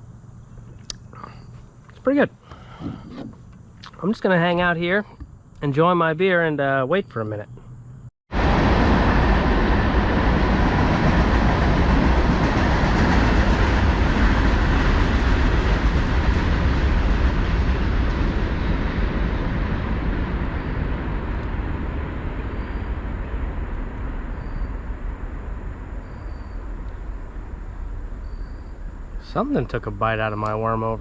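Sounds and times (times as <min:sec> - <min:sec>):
faint high chirps: 0:00.4 - 0:01.7.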